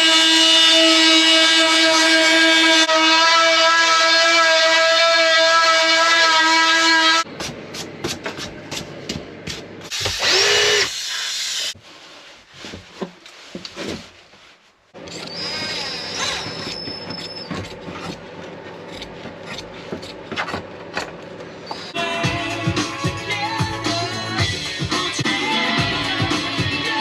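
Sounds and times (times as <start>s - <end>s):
power drill whining: 10.0s - 11.8s, 15.0s - 17.5s.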